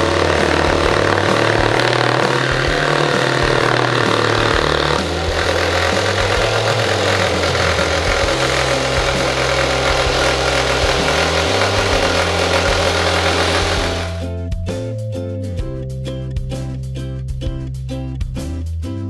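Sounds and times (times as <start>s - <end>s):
angle grinder running: 0.0s - 14.2s.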